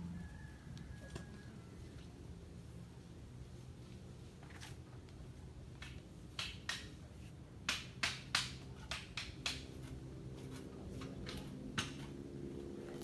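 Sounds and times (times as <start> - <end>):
steady low hum: 0.0 - 6.4
hoe striking and scraping soil: 8.4 - 13.0.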